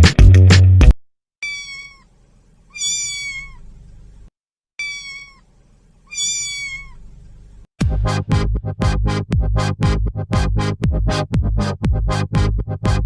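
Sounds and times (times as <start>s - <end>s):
cat meowing: 1.4s - 2.1s, 2.7s - 3.7s, 4.8s - 7.1s.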